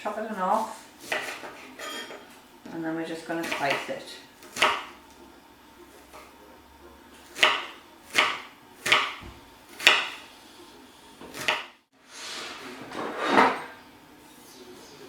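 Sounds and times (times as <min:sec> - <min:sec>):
knife striking chopping board: 0:01.0 - 0:01.5, 0:04.5 - 0:05.0, 0:07.3 - 0:10.2, 0:11.3 - 0:11.7.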